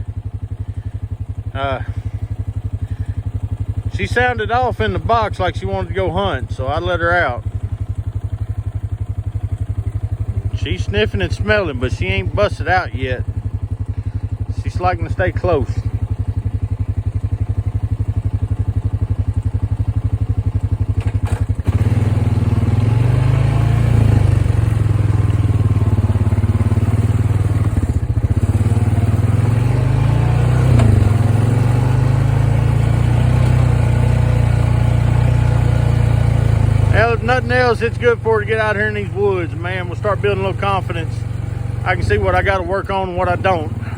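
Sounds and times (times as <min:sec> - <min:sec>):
engine running: 0:00.0 - 0:43.9.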